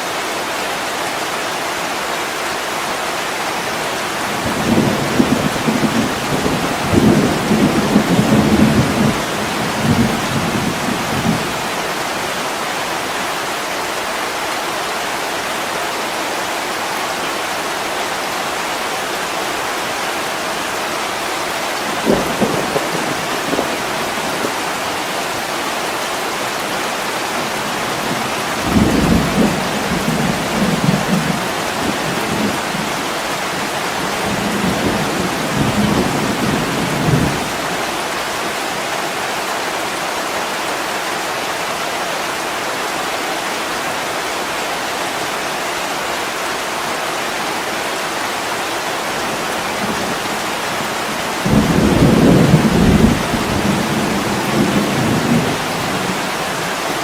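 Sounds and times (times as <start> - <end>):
heavy rain on window glass: 2.1 - 15.2, 18.2 - 41.3, 48.3 - 57.0
thunder rumbling: 21.9 - 24.7, 27.4 - 33.0, 49.8 - 56.9.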